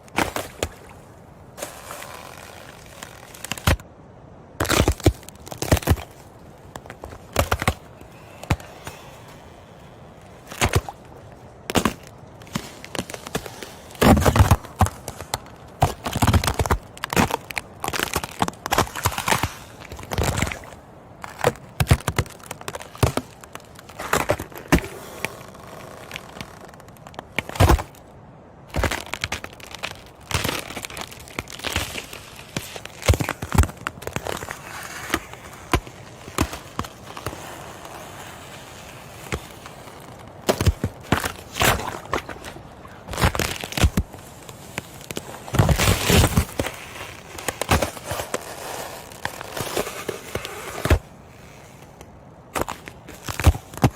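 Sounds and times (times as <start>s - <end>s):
ice cracking and crunching: 0.0s - 3.9s, 4.6s - 53.9s.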